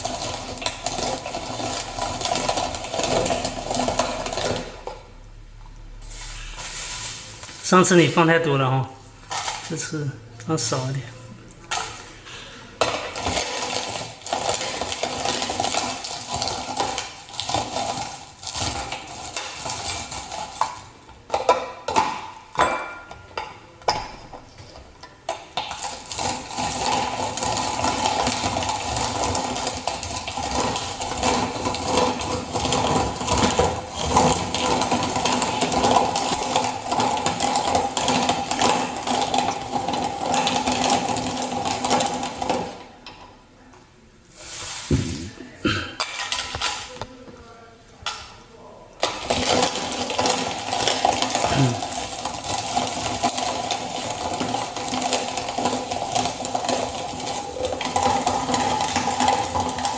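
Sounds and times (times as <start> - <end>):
meat grinder cranking: 0.0 - 5.1, 12.8 - 22.3, 25.3 - 43.0, 49.0 - 59.9.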